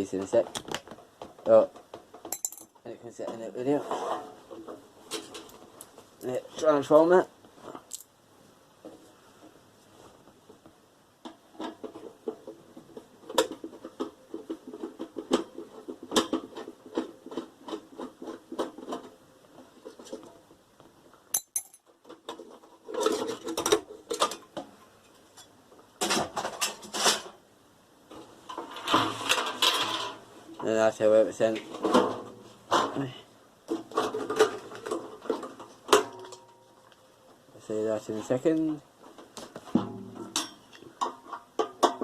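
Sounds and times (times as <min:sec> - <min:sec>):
metal clatter: 0:02.2 - 0:02.8, 0:28.4 - 0:30.2, 0:39.7 - 0:42.0
metal parts clinking and knocking: 0:02.2 - 0:02.8, 0:21.3 - 0:24.4.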